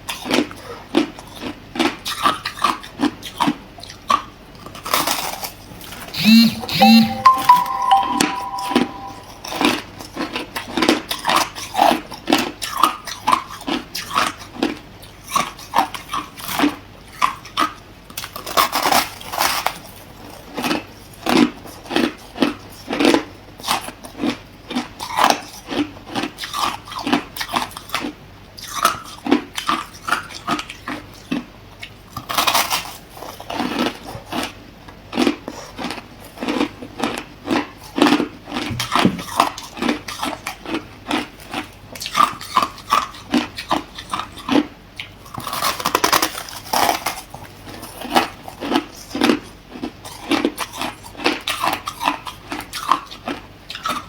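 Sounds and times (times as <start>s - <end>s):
person chewing ice: 48.1s - 54.0s.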